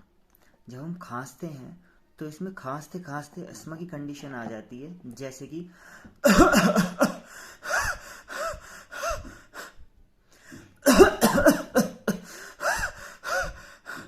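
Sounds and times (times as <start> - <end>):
person coughing harshly: 6.2 - 9.3, 10.8 - 13.6
wheezing gasps for breath: 7.2 - 10.8, 12.1 - 14.0.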